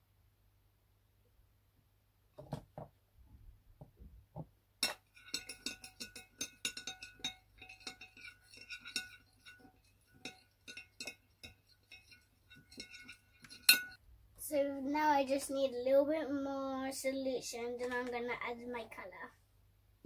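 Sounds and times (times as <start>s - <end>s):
spoon clinking against bowl: 4.8s - 14.0s.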